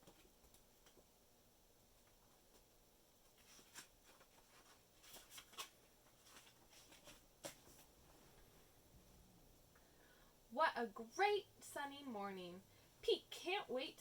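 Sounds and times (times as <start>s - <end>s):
paper rustling: 2.3s - 8.5s
book pages turning: 3.3s - 7.9s.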